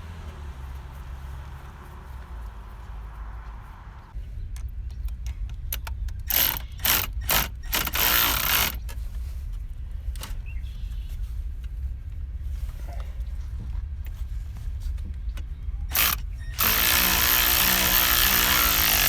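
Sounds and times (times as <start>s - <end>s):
ratchet wrench ratcheting: 5.7s - 9.0s, 15.9s - 19.0s.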